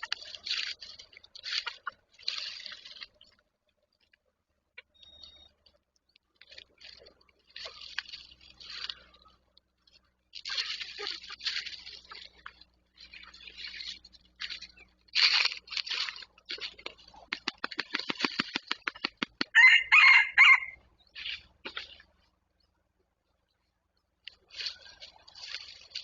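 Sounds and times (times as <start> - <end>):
rustling in leaf litter: 10.4 - 17.2, 24.4 - 26.0
rooster crowing: 19.5 - 20.8.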